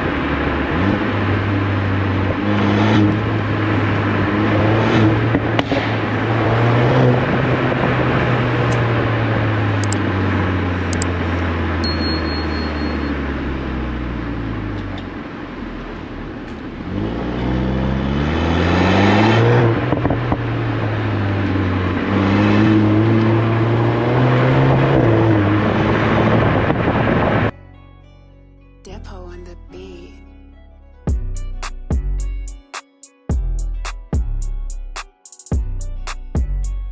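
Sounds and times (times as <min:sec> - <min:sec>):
car engine accelerating: 0:00.0 - 0:27.5.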